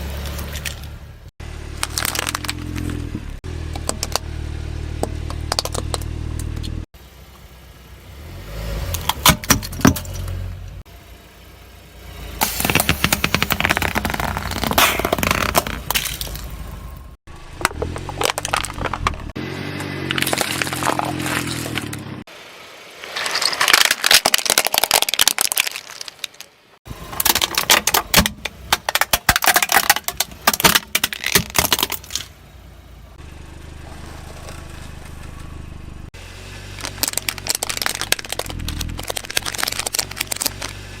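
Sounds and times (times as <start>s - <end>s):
car engine running low: 0.0s - 23.8s, 26.8s - 41.0s
tyres crushing brittle objects: 1.7s - 4.3s, 12.4s - 16.9s, 17.5s - 22.2s, 23.0s - 32.4s, 36.6s - 41.0s.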